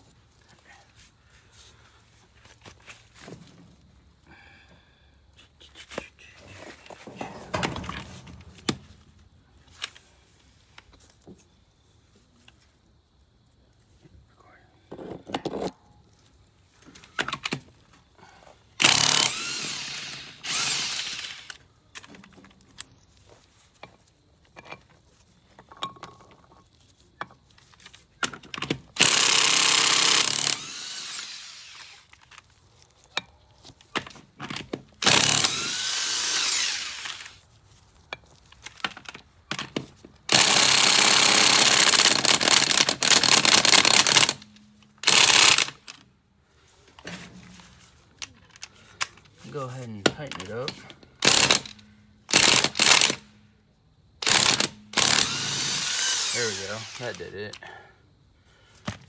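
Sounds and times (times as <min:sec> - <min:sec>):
handling clicks and knocks: 0:06.8 - 0:09.1, 0:50.0 - 0:51.0
power tool running: 0:18.8 - 0:21.6, 0:29.0 - 0:32.2, 0:35.0 - 0:37.4, 0:40.3 - 0:44.4, 0:45.0 - 0:45.8, 0:51.2 - 0:53.2, 0:54.2 - 0:57.4.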